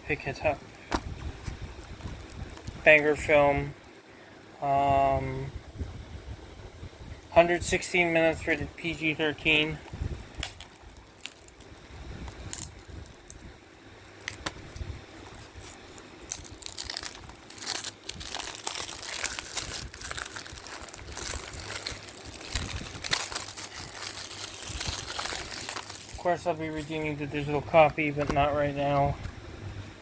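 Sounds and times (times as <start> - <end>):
paper insert crinkling: 1.2 - 3.3, 7.7 - 13.5, 14.2 - 29.4.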